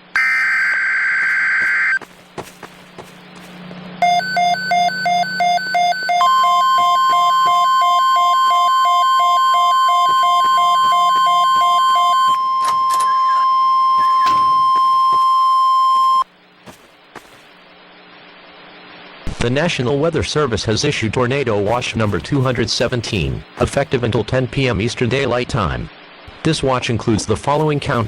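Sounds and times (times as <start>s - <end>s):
steady warning alarm tone: 0.2s - 17.4s.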